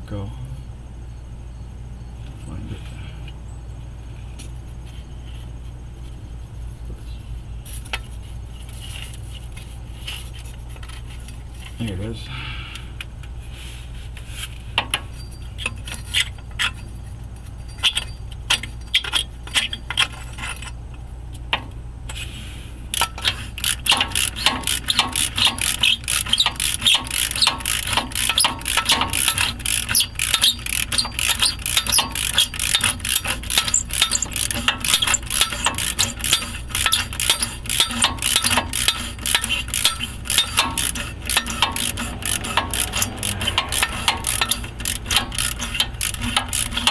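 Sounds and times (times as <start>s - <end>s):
metal tools clinking: 15.0s - 20.8s, 23.1s - 46.9s
ratchet wrench clicking: 17.8s - 20.7s, 22.9s - 46.9s.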